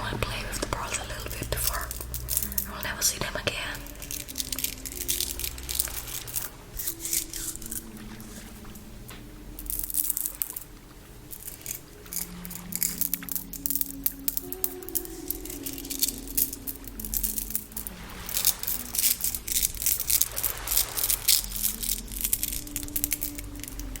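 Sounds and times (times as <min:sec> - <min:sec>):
low held tone: 0:00.0 - 0:20.6
crackling and crinkling: 0:00.0 - 0:24.0.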